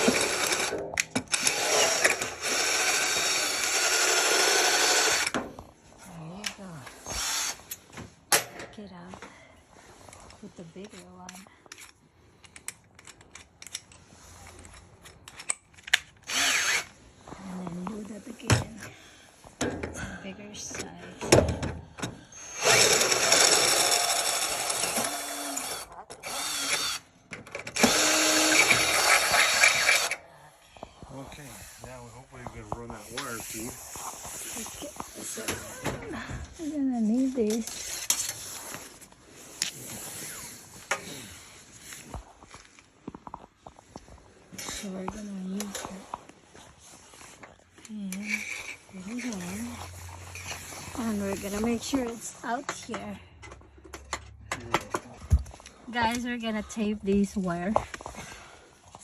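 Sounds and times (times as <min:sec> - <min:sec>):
electric drill boring: 0:00.0 - 0:05.4, 0:07.1 - 0:07.7, 0:16.2 - 0:17.0, 0:22.4 - 0:30.2.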